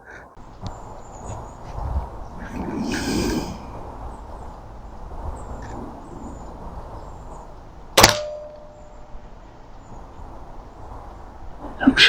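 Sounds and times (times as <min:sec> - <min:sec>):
air rifle shot: 0:08.0 - 0:09.0.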